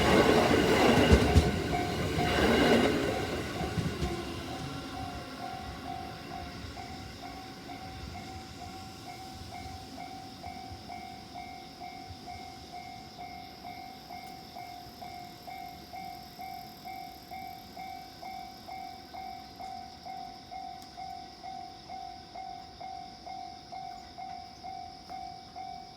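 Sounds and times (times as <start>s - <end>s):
train rumble: 0.0s - 16.4s
level-crossing warning bell ringing: 0.0s - 25.9s.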